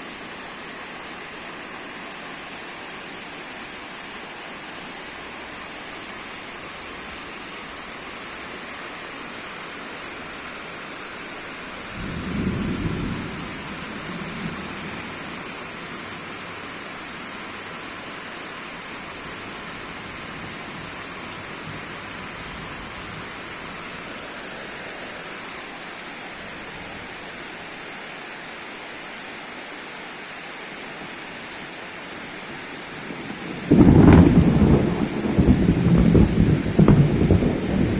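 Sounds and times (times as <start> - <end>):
heavy rain falling: 0.0 - 37.9
thunder rumbling: 11.9 - 15.7, 33.0 - 37.9.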